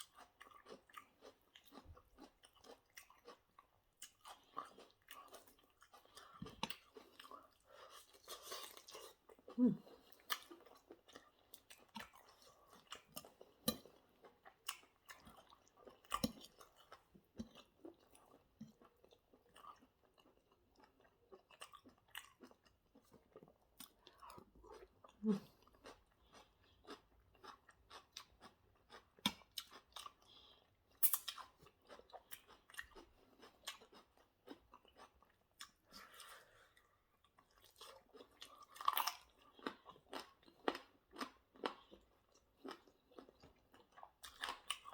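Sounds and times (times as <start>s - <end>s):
person chewing crunchy food: 0.0s - 44.9s.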